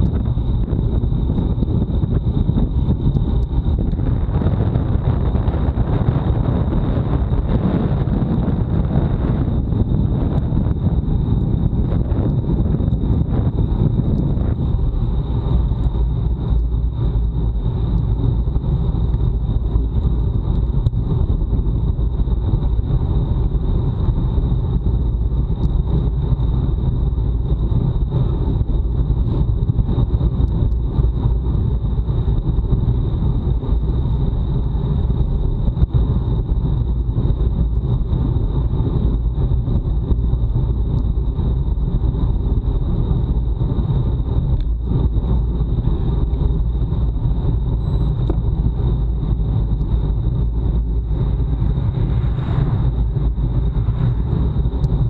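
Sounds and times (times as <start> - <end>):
bicycle road noise: 0.0 - 55.0
wind rumble on microphone: 0.0 - 55.0
thin high whine: 47.4 - 55.0.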